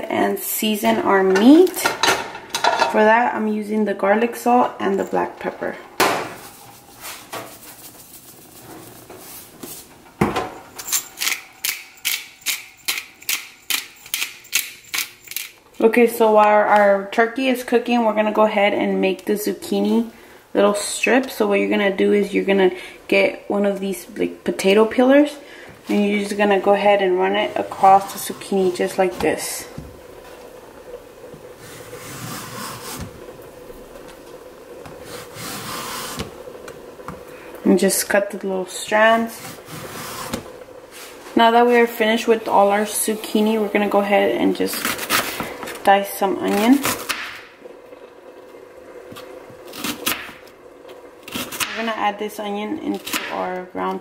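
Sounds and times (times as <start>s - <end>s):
pepper grinder grinding: 10.8s - 15.6s.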